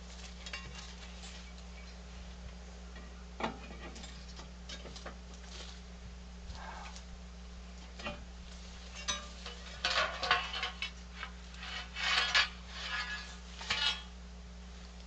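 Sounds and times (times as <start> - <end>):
low electrical hum: 0.0 - 15.0
metal tools clinking and scraping: 0.3 - 2.0, 8.9 - 14.1.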